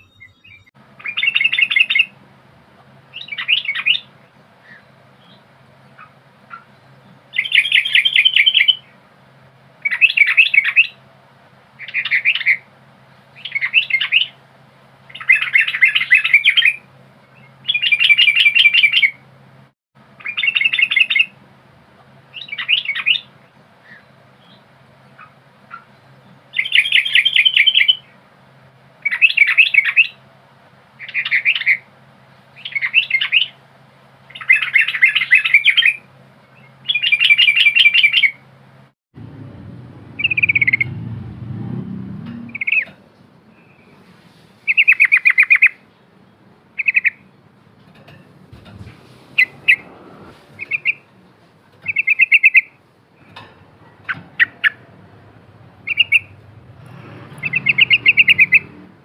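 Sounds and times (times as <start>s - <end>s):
bird chirping phrases: 0.0s - 2.2s, 3.0s - 9.0s, 11.8s - 14.4s, 15.1s - 19.2s, 40.0s - 41.3s, 44.7s - 47.5s, 48.6s - 51.1s, 51.8s - 53.4s, 54.0s - 56.7s, 57.4s - 58.8s.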